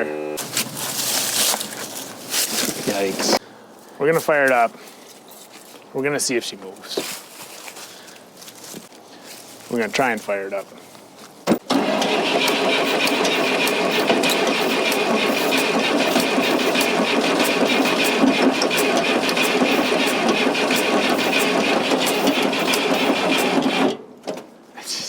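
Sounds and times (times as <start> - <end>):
diesel engine cranking: 0.0 - 3.4, 11.5 - 24.0.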